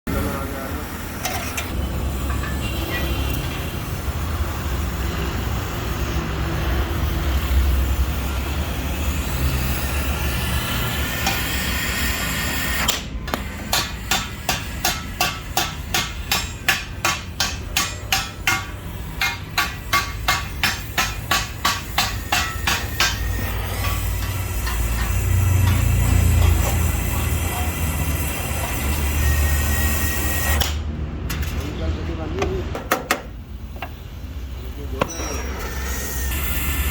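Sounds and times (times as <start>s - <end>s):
hammer strikes: 12.8s - 27.2s, 32.4s - 34.0s, 35.0s - 35.6s.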